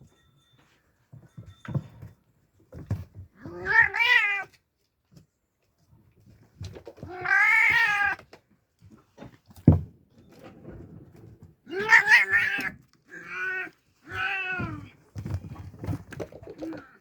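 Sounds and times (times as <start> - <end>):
kittens meowing: 7.1 - 8.2, 11.7 - 14.9.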